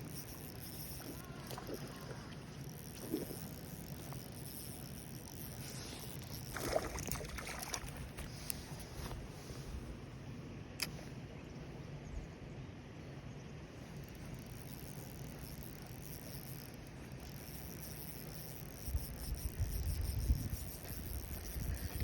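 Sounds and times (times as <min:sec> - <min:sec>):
wind rumble on microphone: 0:18.8 - 0:22.0.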